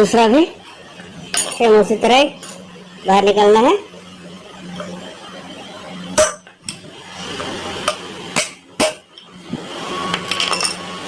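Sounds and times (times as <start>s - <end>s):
hammer striking steel rod: 6.2s - 6.5s.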